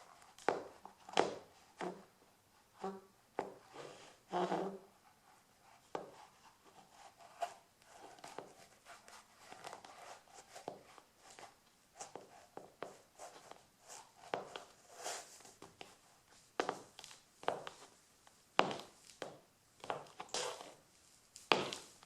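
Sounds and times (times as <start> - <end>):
shoes scuffing on parquet floor: 0.4 - 2.0, 2.8 - 4.8, 5.8 - 18.0, 18.6 - 22.0.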